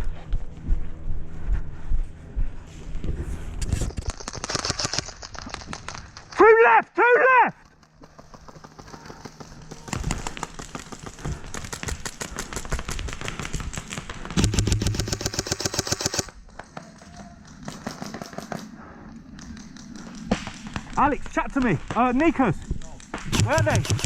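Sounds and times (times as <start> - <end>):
airsoft guns firing bursts: 8.0 - 16.3, 23.1 - 24.0.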